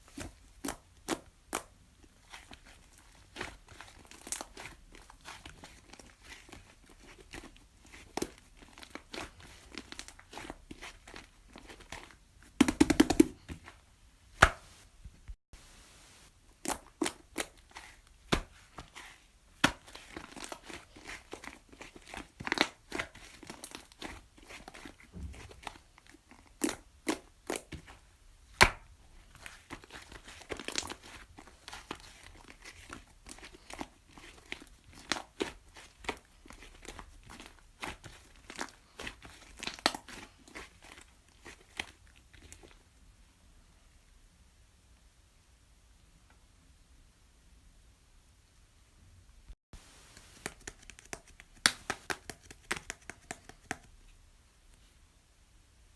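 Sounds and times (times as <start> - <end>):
slime crackling and popping: 19.6 - 42.7.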